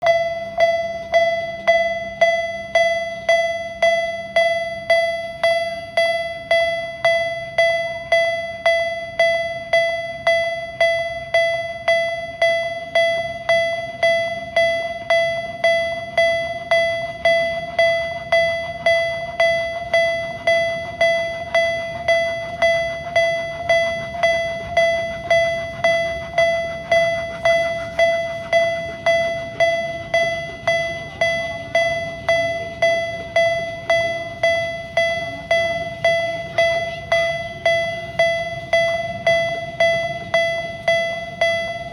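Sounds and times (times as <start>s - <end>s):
railroad crossing bell ringing: 0.0s - 41.9s.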